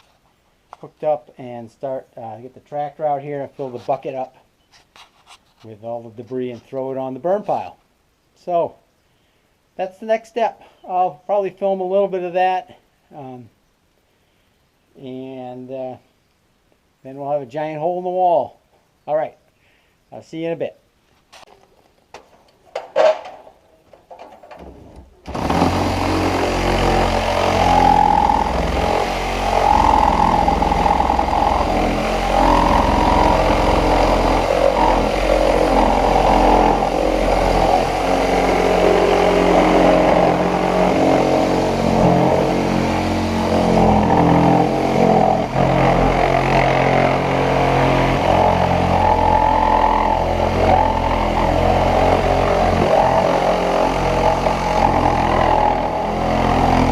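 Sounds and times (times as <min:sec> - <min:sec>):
tractor engine starting and running: 0:22.6 - 0:56.9.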